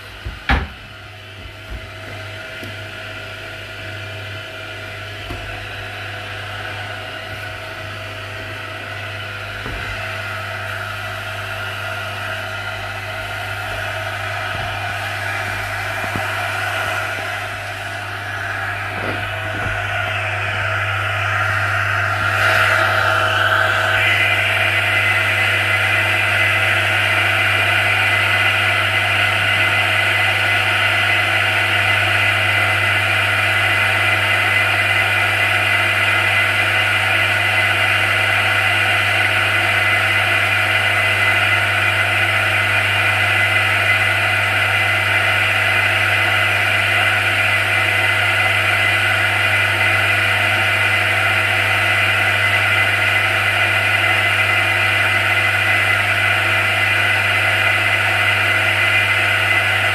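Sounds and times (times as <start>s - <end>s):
water pump humming and whining: 0.0s - 59.9s.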